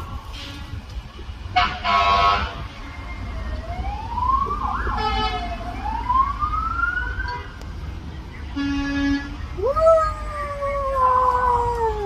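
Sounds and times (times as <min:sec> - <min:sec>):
loud horn blasts: 0:01.5 - 0:03.0, 0:05.0 - 0:05.4, 0:08.6 - 0:09.5
siren wailing: 0:03.2 - 0:07.6.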